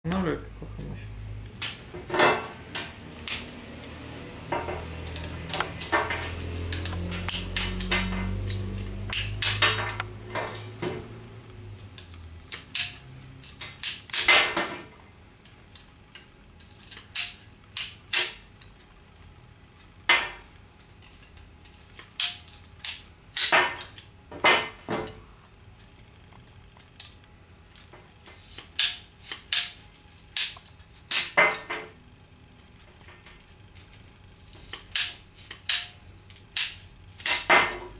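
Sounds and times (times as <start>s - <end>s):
pruning shears clicking: 2.7s - 4.0s, 4.8s - 10.2s.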